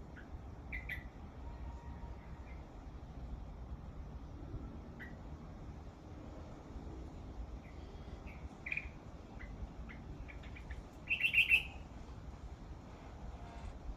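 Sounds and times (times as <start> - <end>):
bird singing: 8.2 - 11.8.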